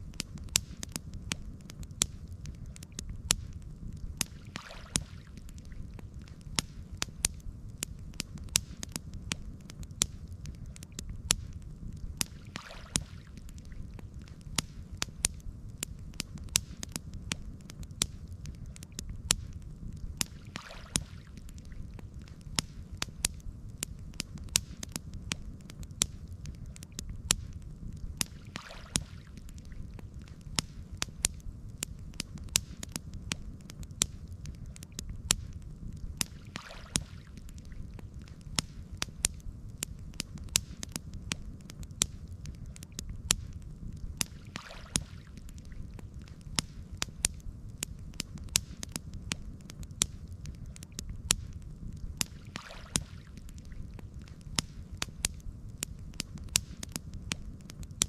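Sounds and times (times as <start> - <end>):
campfire crackling and popping: 0.0 - 58.0.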